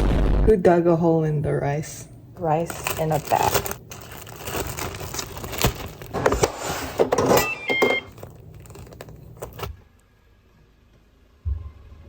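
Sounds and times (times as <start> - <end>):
objects rustling and clattering: 2.4 - 9.8
squeaky tones: 7.2 - 8.2.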